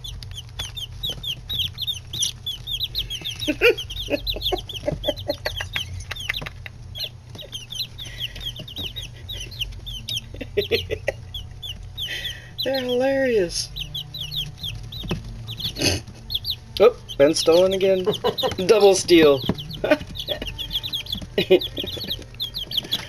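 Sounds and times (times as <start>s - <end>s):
chicks peeping: 0.0s - 23.0s.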